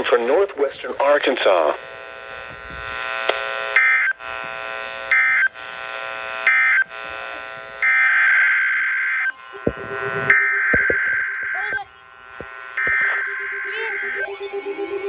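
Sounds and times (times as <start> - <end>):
shrill data bursts: 0.0 - 15.0
steady electronic buzz: 0.0 - 15.0.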